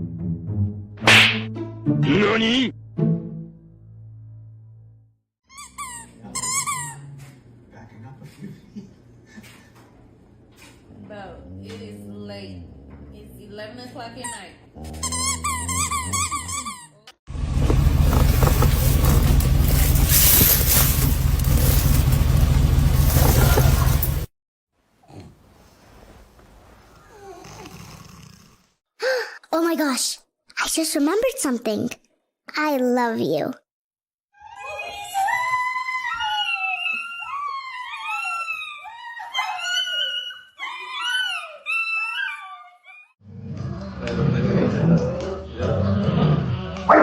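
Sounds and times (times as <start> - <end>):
vehicle engine drone: 17.3 - 24.3
dog whining howls: 34.4 - 43.2.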